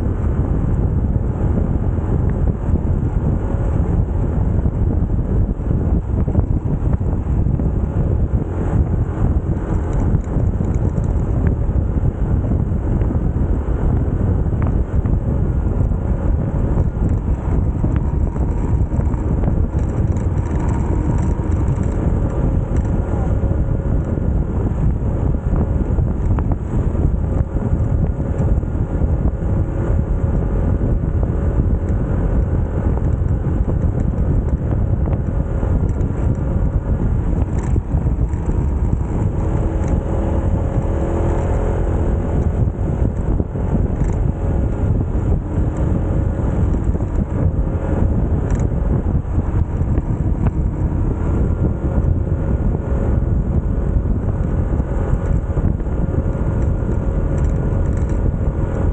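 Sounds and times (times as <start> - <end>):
motorcycle engine running: 0.0 - 58.9
wind rumble on microphone: 0.0 - 58.9.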